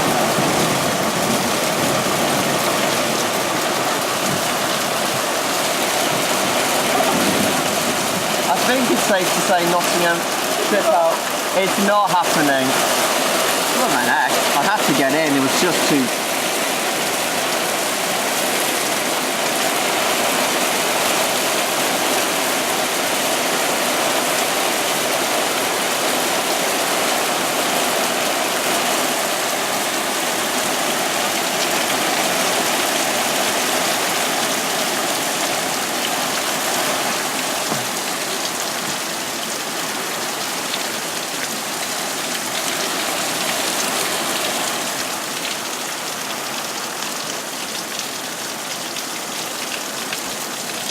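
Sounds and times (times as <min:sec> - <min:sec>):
heavy rain pouring: 0:00.0 - 0:50.9.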